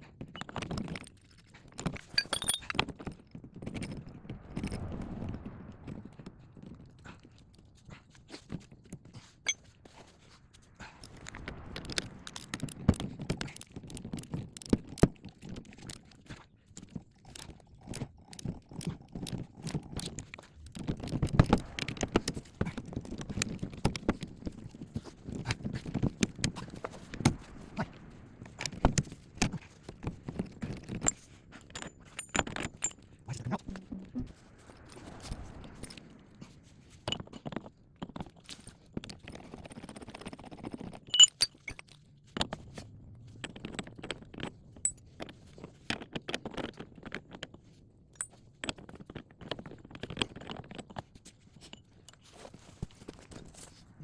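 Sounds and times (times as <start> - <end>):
hand tools clanking on steel: 2.2 - 2.8.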